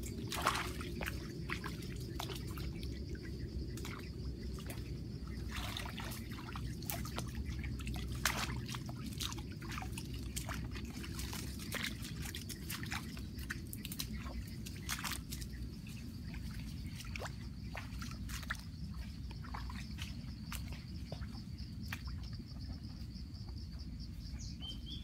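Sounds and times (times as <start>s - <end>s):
water dripping and trickling: 0.0s - 23.1s
faint high insect-like tone: 0.0s - 25.0s
steady low rumble: 0.0s - 25.0s.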